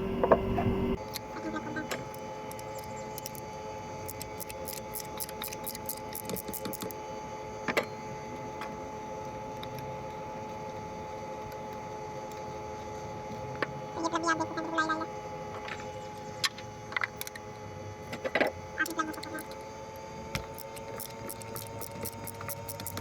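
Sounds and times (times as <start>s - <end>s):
steady background hum: 0.0s - 23.0s
ratchet clicking: 2.0s - 3.4s, 4.0s - 7.0s, 20.4s - 23.0s.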